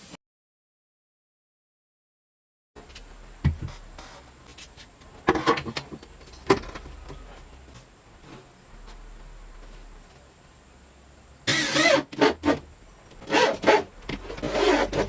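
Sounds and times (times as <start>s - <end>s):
low steady hum: 2.8s - 11.5s, 12.4s - 15.0s.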